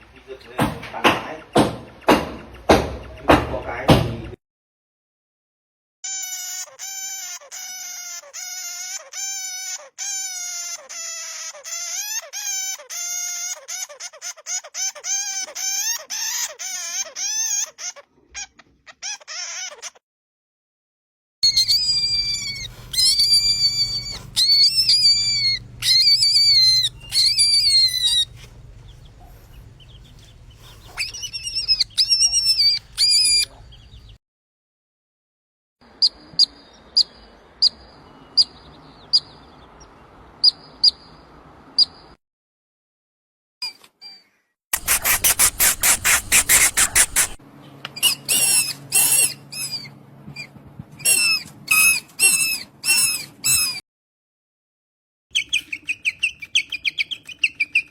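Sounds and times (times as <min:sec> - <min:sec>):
mouse squeaks: 0:06.1 - 0:20.0, 0:21.4 - 0:33.7, 0:44.8 - 0:47.4, 0:48.0 - 0:53.8, 0:55.3 - 0:57.9
low steady hum: 0:21.7 - 0:32.0.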